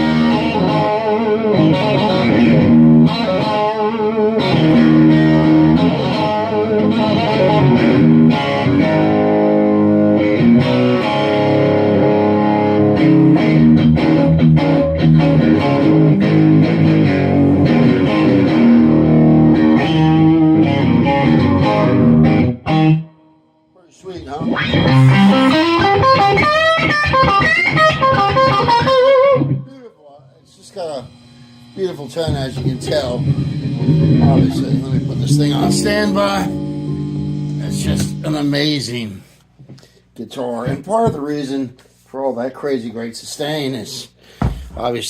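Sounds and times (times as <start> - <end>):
distorted electric guitar: 0.0 - 23.1, 24.4 - 29.7, 30.8 - 39.2.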